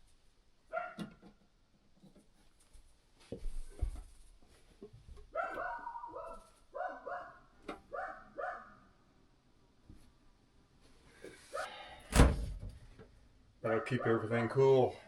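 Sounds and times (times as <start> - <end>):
dog barking: 0.7 - 1.0, 5.3 - 8.8, 13.8 - 14.3.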